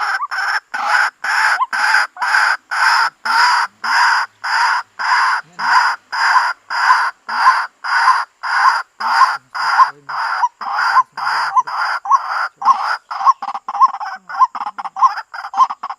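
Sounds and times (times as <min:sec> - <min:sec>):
waterhen harsh calls: 0:00.0 - 0:15.9.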